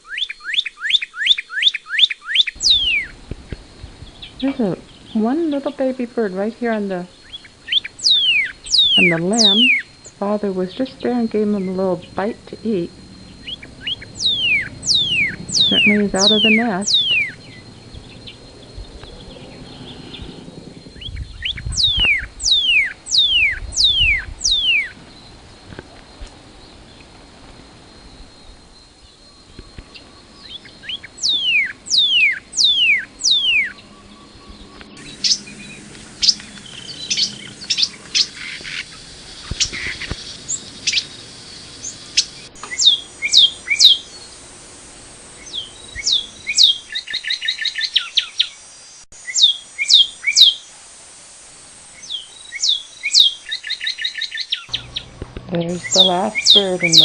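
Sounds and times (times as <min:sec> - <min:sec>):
cardinal whistling song: 0:00.0 - 0:27.1, 0:27.9 - 0:44.4, 0:45.4 - 0:48.6, 0:49.2 - 0:50.6, 0:52.0 - 0:57.0
bird chip notes: 0:01.2 - 0:19.8, 0:41.7 - 0:44.6, 0:52.0 - 0:57.0.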